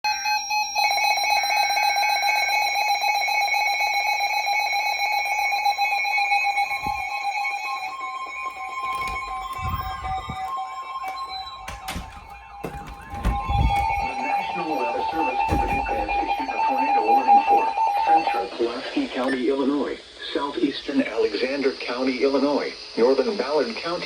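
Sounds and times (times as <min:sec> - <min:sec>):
two-tone attention signal blaring: 0:04.7 - 0:19.4
warbling data tones: 0:06.5 - 0:22.0
low thumps: 0:09.0 - 0:10.6, 0:11.5 - 0:14.2.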